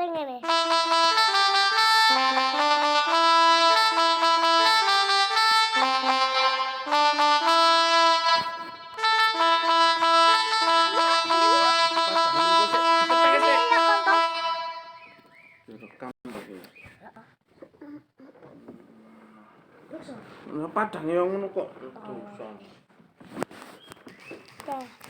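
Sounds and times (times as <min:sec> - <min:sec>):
reedy melodica tune from phone speaker: 0:00.4 - 0:15.2.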